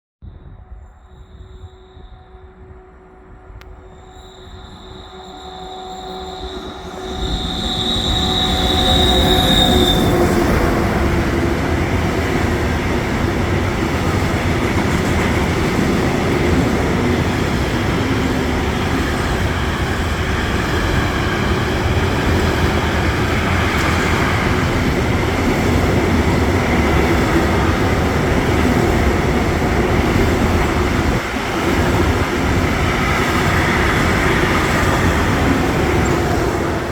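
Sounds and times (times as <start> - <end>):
train wheel and rail noise: 0.2 - 36.9
high wheel squeal: 3.7 - 14.4.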